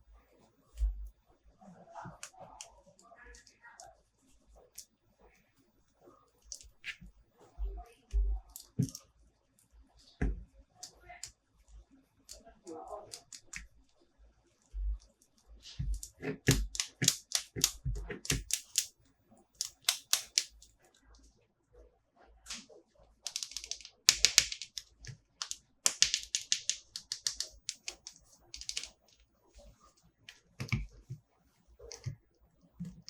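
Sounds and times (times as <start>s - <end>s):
plastic clicks and taps: 8.1s - 9.0s, 15.8s - 18.9s, 19.6s - 20.7s, 23.3s - 29.0s, 30.6s - 31.2s, 31.9s - 32.2s.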